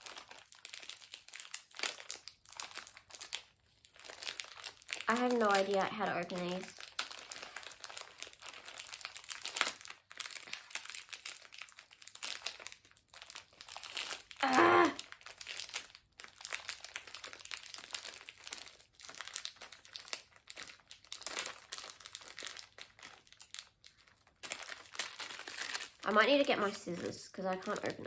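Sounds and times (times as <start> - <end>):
plastic wrapper crinkling: 0.0 - 28.0
short vocal sound: 14.4 - 15.0.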